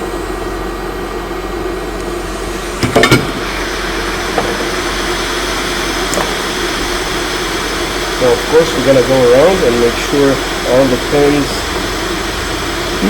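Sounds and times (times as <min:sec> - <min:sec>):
fan whirring: 0:00.0 - 0:13.0.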